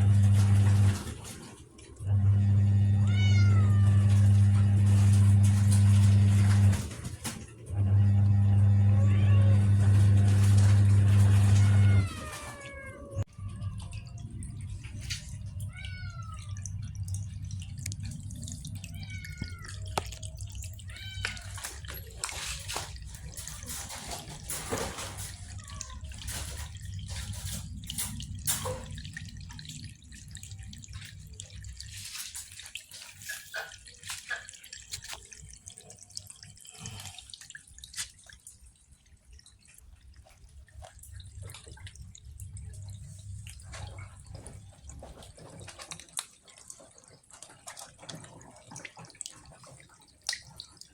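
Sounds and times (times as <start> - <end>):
cats meowing: 2.8 - 6.7, 8.7 - 27.6
low steady hum: 12.7 - 24.6.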